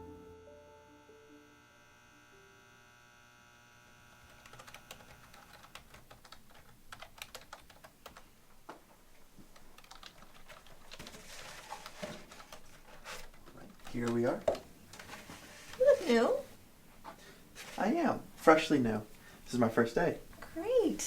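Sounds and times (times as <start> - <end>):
computer keyboard typing: 4.4 - 8.3, 9.5 - 11.2.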